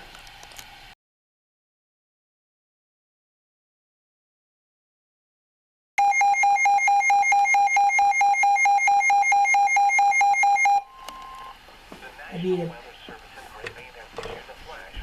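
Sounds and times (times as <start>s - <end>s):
rapid alarm beeping: 6.0s - 11.6s.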